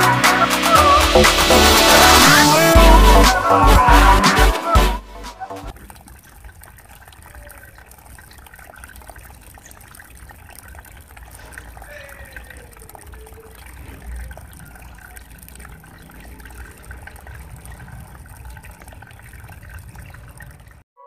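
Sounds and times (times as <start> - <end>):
water trickling and splashing: 5.5 - 20.9.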